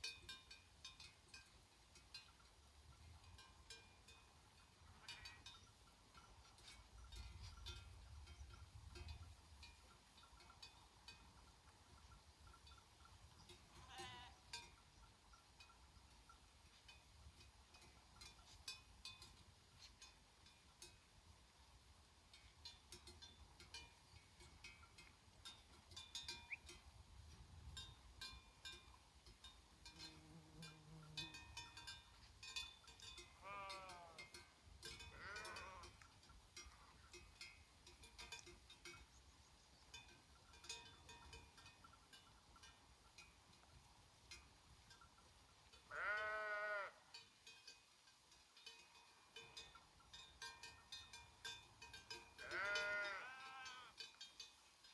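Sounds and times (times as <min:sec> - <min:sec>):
sheep bells clinking: 0:00.0 - 0:54.9
sheep bleating: 0:13.8 - 0:14.4, 0:33.4 - 0:34.2, 0:35.2 - 0:35.9, 0:45.9 - 0:47.0, 0:52.4 - 0:53.9.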